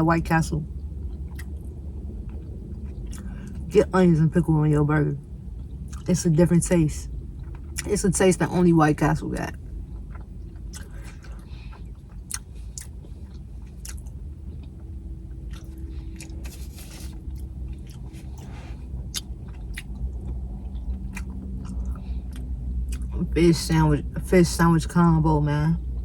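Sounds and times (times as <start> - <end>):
low steady hum: 0.0 - 26.0
person chewing food: 0.8 - 3.7, 5.5 - 6.1, 7.3 - 7.9, 9.5 - 23.2
wet mouth clicks and smacks: 1.1 - 1.7.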